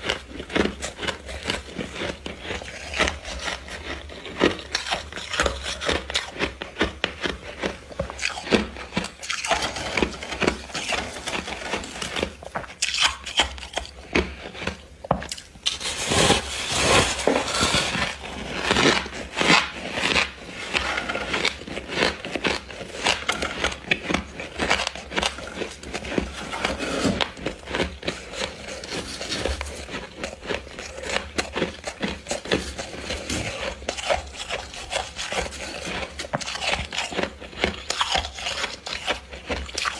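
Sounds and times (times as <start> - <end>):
frost being chewed: 0.0 - 39.9.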